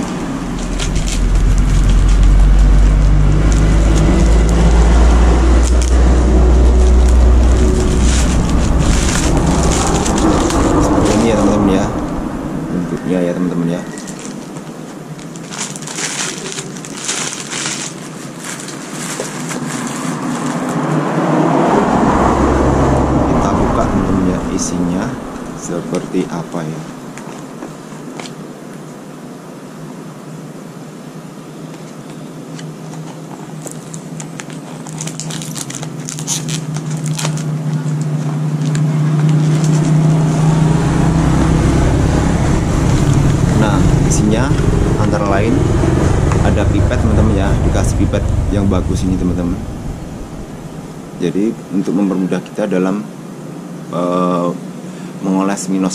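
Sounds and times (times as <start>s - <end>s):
packaging torn and crinkled: 0.0s - 11.2s, 13.9s - 20.9s, 32.6s - 40.6s
vehicle engine approaching: 0.0s - 27.8s, 34.5s - 52.2s
road traffic noise: 0.0s - 55.9s.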